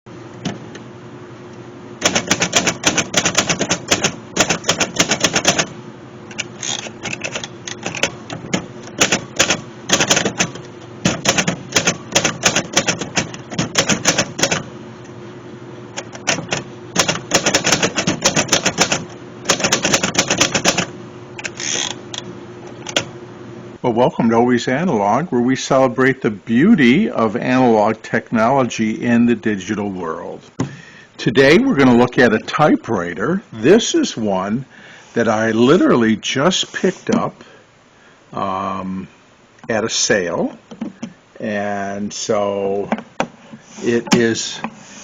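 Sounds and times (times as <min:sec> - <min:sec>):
faint hum: 0:00.1 - 0:45.0
manual typewriter typing: 0:02.0 - 0:05.7, 0:06.3 - 0:14.7, 0:16.0 - 0:22.0.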